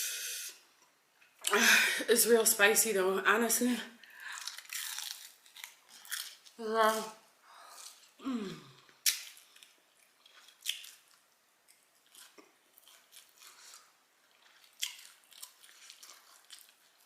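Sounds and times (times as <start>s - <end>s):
chewing chicken wing: 9.1s - 17.0s.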